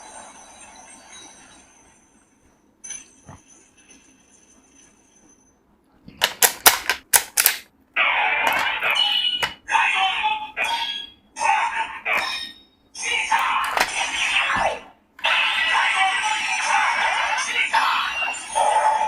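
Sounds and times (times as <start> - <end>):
toy electronic sound effect: 8.1 - 14.6.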